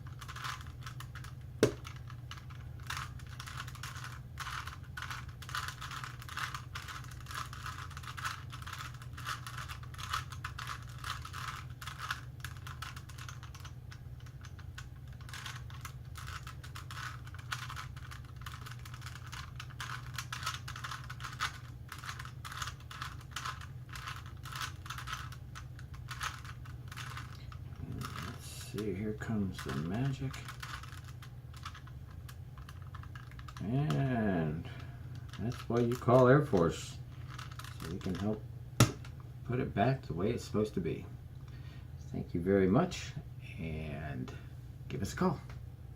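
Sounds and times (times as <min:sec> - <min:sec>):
low steady hum: 0:00.0 - 0:45.9
plastic puzzle cube clicking: 0:00.2 - 0:27.4.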